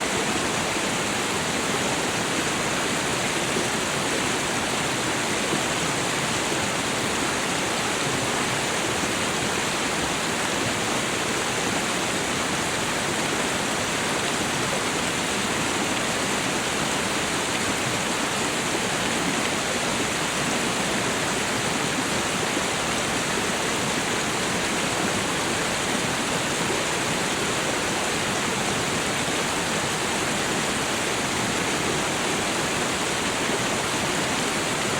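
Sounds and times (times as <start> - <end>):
waterfall and stream rushing: 0.0 - 34.9.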